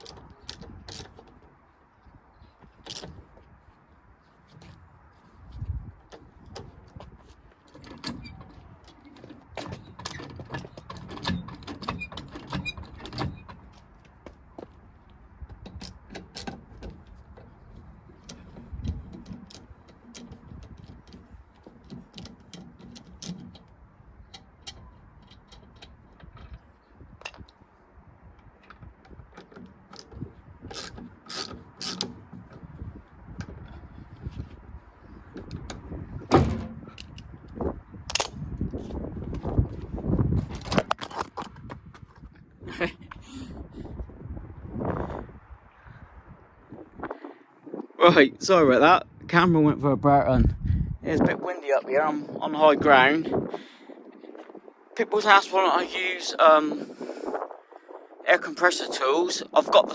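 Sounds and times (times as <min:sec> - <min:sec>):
ratchet clicking on metal: 0:30.7 - 0:32.2.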